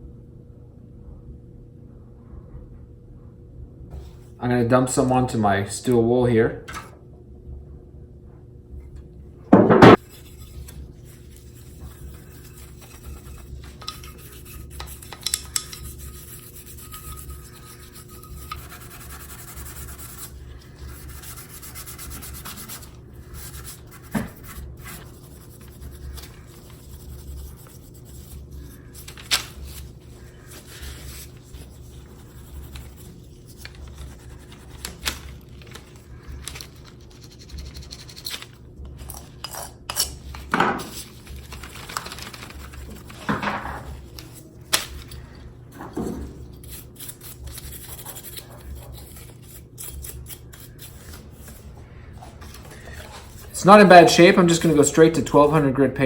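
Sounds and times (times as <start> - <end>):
sharp knocks: 9.5 - 10.0
steel wool scrubbing metal: 9.9 - 41.8, 43.9 - 55.6.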